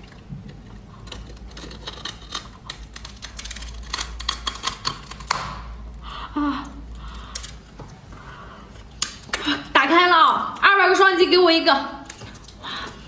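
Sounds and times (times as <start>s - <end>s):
sea urchin shell cracking: 0.0s - 6.0s, 8.8s - 9.7s.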